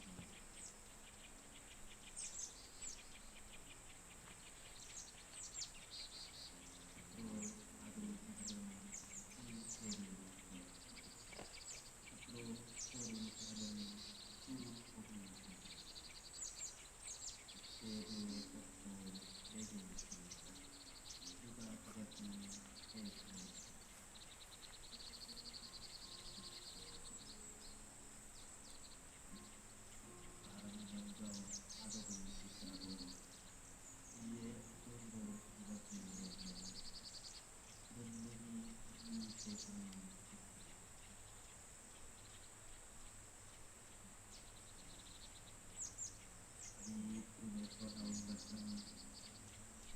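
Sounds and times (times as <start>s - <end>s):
birds chirping and trilling: 0.0s - 49.9s
high insect drone: 0.0s - 49.9s
person chanting prayers: 6.4s - 16.0s, 17.5s - 23.8s, 24.9s - 28.0s, 29.3s - 33.5s, 34.1s - 36.9s, 37.9s - 40.7s, 46.8s - 49.9s.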